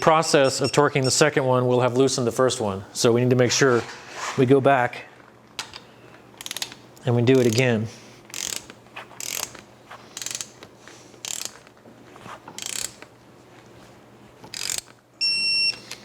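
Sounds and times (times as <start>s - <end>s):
ratchet wrench clicking: 6.4s - 7.7s, 8.3s - 10.6s, 11.2s - 11.7s, 12.6s - 13.1s, 14.5s - 15.0s.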